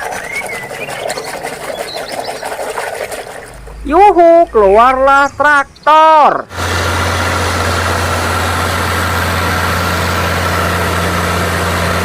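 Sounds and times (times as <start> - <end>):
tractor engine idling: 6.5 - 12.0.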